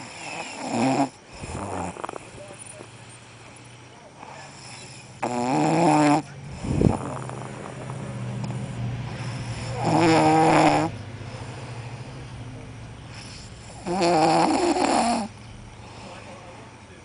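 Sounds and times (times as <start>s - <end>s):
person snoring: 0.0s - 2.4s, 4.3s - 8.0s, 9.1s - 11.9s, 13.1s - 16.5s.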